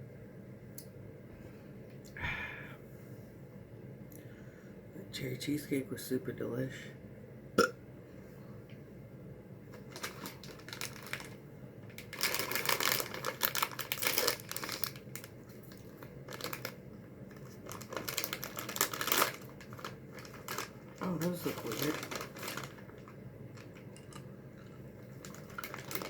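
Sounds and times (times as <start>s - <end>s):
candy packaging crinkling: 9.7s - 26.0s.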